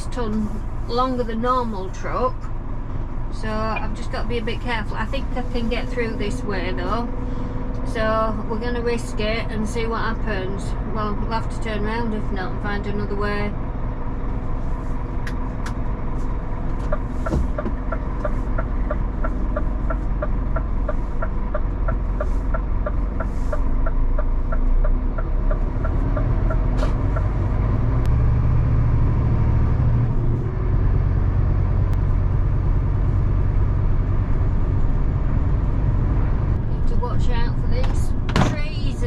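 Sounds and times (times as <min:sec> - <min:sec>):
lorry diesel engine running: 0:00.0 - 0:39.0
turn indicator ticking: 0:16.7 - 0:28.2.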